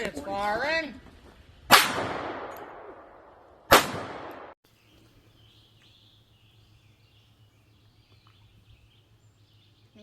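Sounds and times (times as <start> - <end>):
rifle shot with echo: 1.7 - 4.6
faint birds chirping: 4.7 - 10.0.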